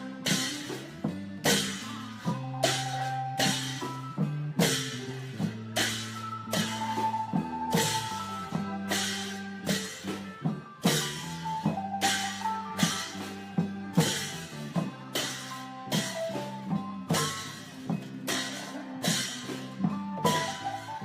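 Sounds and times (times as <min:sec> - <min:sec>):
faint melody: 0:00.0 - 0:21.0
long drums playing rhythm: 0:00.0 - 0:21.0
cymbals crashing: 0:00.2 - 0:16.5.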